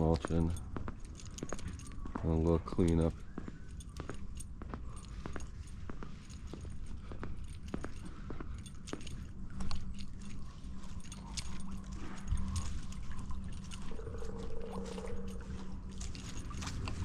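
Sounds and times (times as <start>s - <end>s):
water trickling and gurgling: 8.6s - 17.0s.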